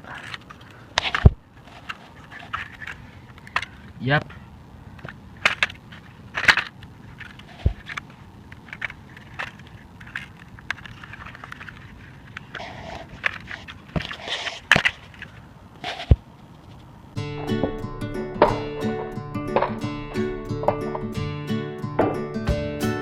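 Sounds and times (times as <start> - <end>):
plastic parts clicking and rattling: 5.0 - 12.6
dull thump: 22.0 - 22.7.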